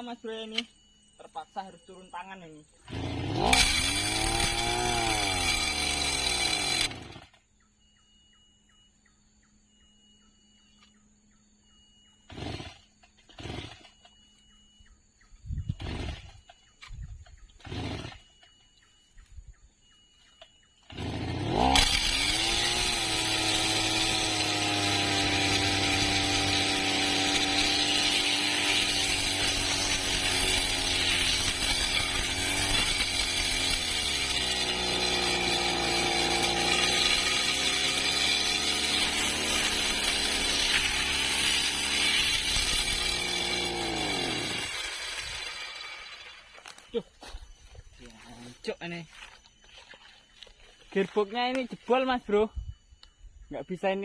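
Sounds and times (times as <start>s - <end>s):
brush cutter engine revving: 2.8s - 7.4s, 12.3s - 14.0s, 15.7s - 16.5s, 17.5s - 18.4s, 20.8s - 47.2s.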